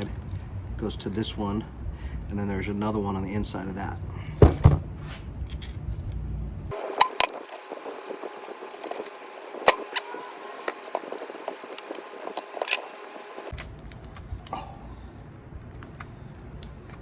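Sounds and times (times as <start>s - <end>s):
wire rustling: 4.2s - 17.0s.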